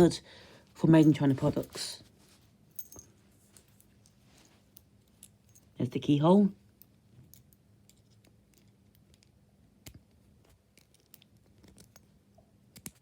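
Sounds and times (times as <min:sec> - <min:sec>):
padlock and keys clicking: 0:06.8 - 0:10.1, 0:10.7 - 0:13.0.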